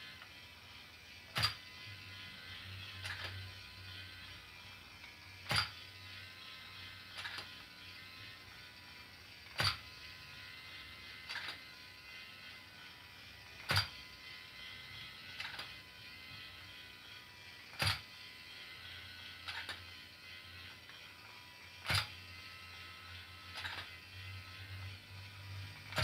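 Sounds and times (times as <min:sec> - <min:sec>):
faint small motor hum: 0:00.0 - 0:26.0
sharp mechanical clicks: 0:01.3 - 0:01.8, 0:02.9 - 0:03.4, 0:05.0 - 0:05.8, 0:07.1 - 0:07.6, 0:09.5 - 0:09.9, 0:11.2 - 0:11.7, 0:13.5 - 0:14.0, 0:15.3 - 0:15.8, 0:17.7 - 0:18.1, 0:19.4 - 0:20.0, 0:21.8 - 0:22.2, 0:23.5 - 0:24.0.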